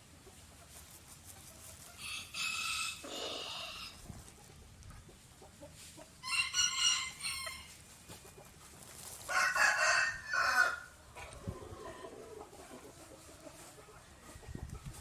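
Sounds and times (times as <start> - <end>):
rooster crowing: 6.2 - 7.7, 9.3 - 10.9.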